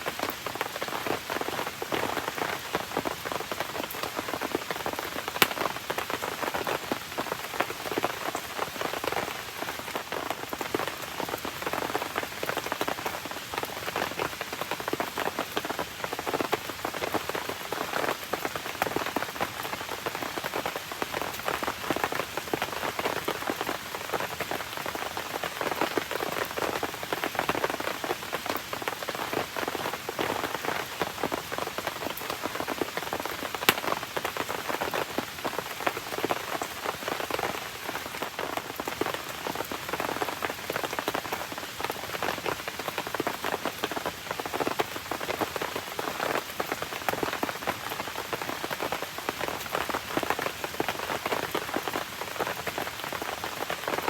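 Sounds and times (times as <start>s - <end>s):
rain pattering: 0.0s - 54.0s
campfire crackling: 4.8s - 6.4s, 32.9s - 35.0s.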